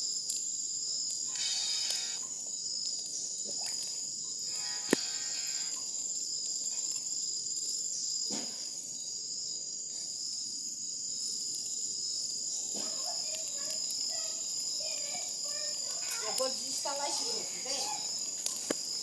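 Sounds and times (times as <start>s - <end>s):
night insects shrilling: 0.0s - 19.0s
sharp pop: 4.9s - 5.1s, 8.3s - 8.6s.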